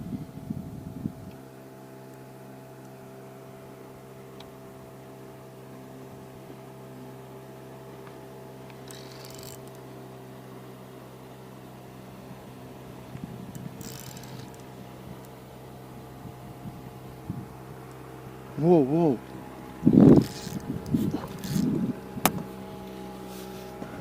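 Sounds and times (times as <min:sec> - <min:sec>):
small motor humming: 0:08.6 - 0:10.4, 0:12.0 - 0:24.0.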